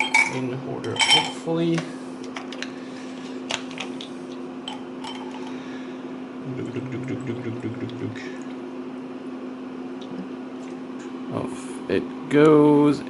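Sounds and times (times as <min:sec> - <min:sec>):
metal clock parts clinking: 0:00.0 - 0:01.4
steady low hum: 0:00.0 - 0:13.0
buzzy low sound: 0:06.4 - 0:08.3.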